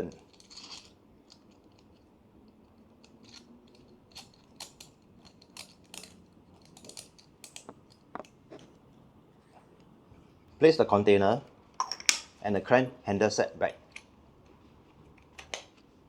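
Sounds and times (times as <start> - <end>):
small clicks and taps: 3.3 - 8.8.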